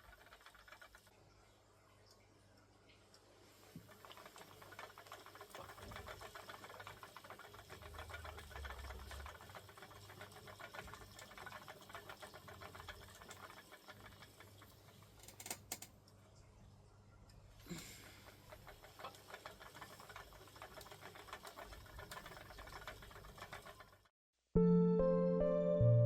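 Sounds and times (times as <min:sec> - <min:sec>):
spinning wheel whirring: 0:00.0 - 0:01.1, 0:03.7 - 0:15.9, 0:17.8 - 0:24.1.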